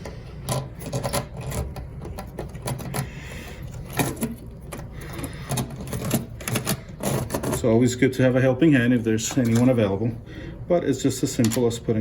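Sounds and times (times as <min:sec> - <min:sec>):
hard parts clicking and knocking: 0:00.0 - 0:07.6.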